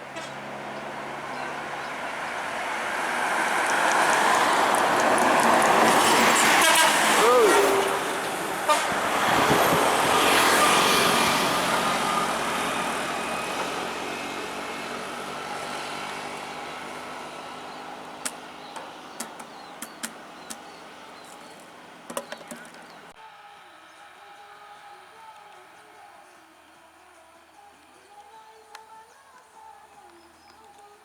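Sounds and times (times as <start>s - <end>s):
heavy vehicle passing: 0.0s - 22.1s.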